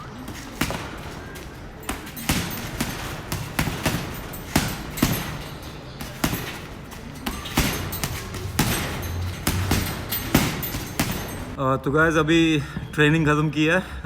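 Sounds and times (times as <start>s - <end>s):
boxing punches thudding: 0.0s - 11.6s.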